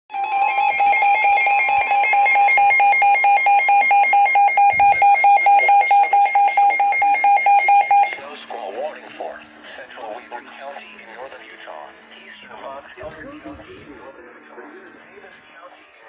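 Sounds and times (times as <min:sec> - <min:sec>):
harsh electronic alert beeps: 0:00.1 - 0:08.2.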